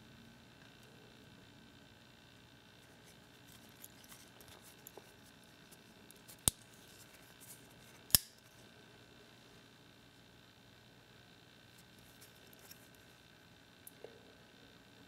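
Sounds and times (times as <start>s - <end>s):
folding knife blade clicking: 8.1s - 8.3s.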